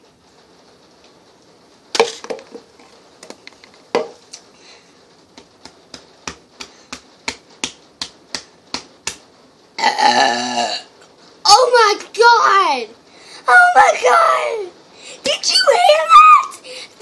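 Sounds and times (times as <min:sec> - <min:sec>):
quick taps: 0:05.4 - 0:09.2
sharp knocks: 0:05.4 - 0:09.2.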